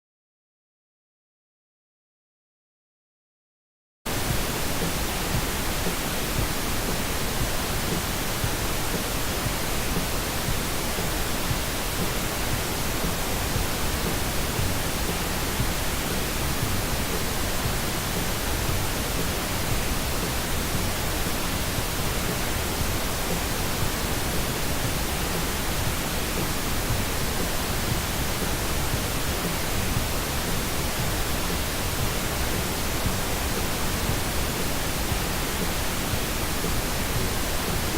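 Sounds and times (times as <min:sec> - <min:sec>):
broadband test noise hiss: 0:04.1 - 0:37.9.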